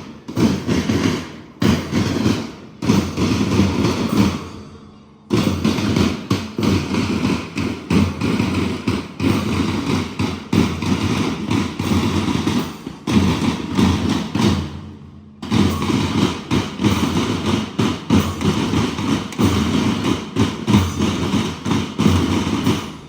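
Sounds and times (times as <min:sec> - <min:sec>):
marching band drums beating: 0:00.0 - 0:23.0.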